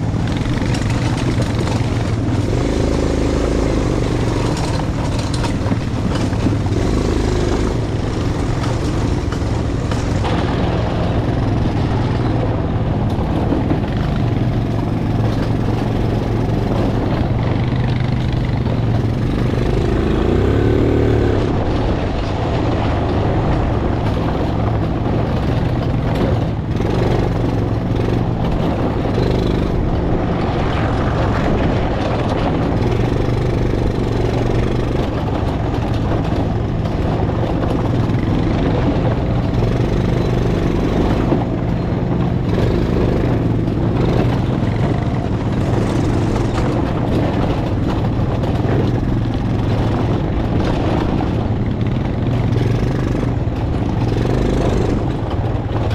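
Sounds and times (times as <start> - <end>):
ride rumble: 0.0 - 55.9
vehicle engine running: 0.0 - 55.9.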